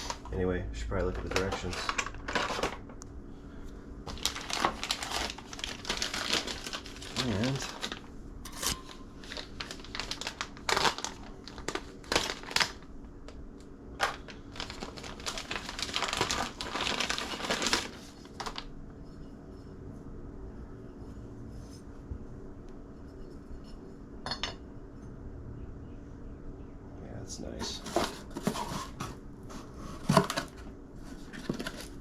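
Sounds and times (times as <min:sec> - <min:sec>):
packaging crinkling: 0:01.0 - 0:03.0, 0:04.1 - 0:13.4, 0:14.0 - 0:18.7, 0:29.6 - 0:32.0.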